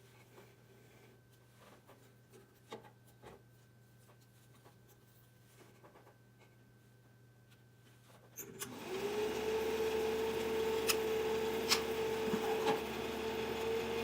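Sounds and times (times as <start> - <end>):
film projector motor humming: 8.6 - 14.0
projector switch click: 10.8 - 11.9.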